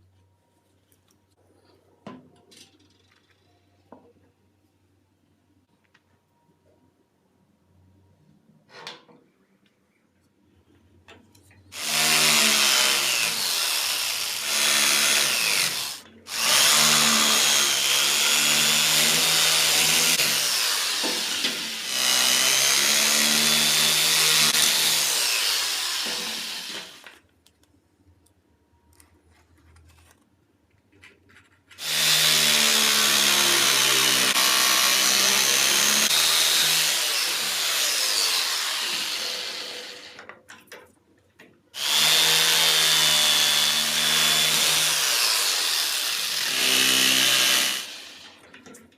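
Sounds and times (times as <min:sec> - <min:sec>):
electric drill motor whining: 0:11.8 - 0:27.1, 0:31.8 - 0:40.2, 0:41.8 - 0:48.4.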